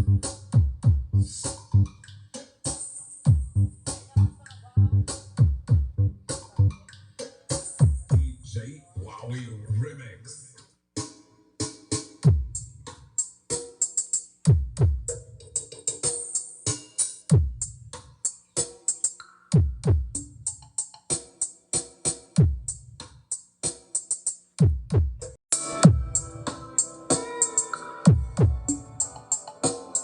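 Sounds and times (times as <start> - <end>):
rapid hi-hat ticks: 12.1 - 25.4
electronic dance music: 25.5 - 30.0.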